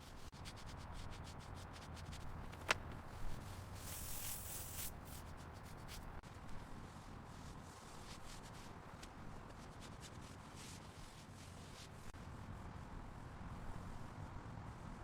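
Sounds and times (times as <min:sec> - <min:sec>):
scratchy sanding strokes on headlight: 0:03.2 - 0:06.1.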